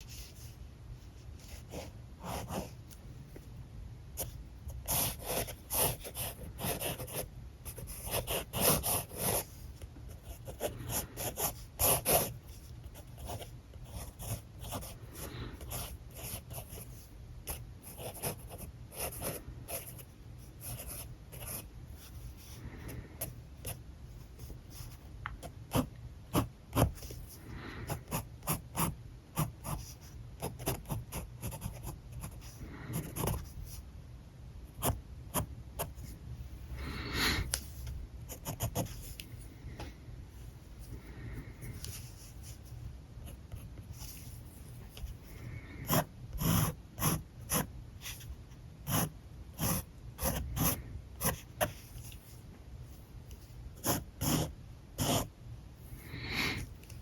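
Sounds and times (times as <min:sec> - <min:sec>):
marker scratching on paper: 0:01.4 - 0:02.8, 0:04.2 - 0:22.6, 0:28.0 - 0:33.8, 0:36.8 - 0:39.2, 0:45.8 - 0:48.2, 0:48.8 - 0:52.3, 0:53.8 - 0:55.3.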